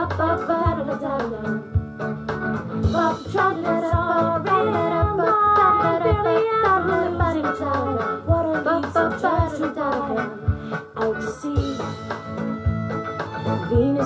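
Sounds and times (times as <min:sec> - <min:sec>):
gliding melody over guitar: 0:00.0 - 0:14.0.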